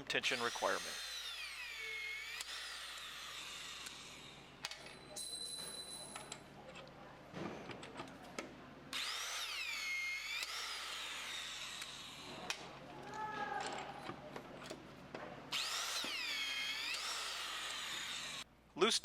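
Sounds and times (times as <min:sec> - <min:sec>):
electric wrench motor whine: 0:00.2 - 0:05.2, 0:08.9 - 0:12.3, 0:15.5 - 0:18.4.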